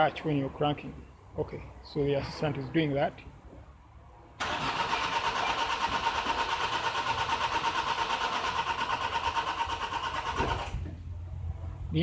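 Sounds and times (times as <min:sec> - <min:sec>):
starter motor cranking engine: 0:04.4 - 0:10.9.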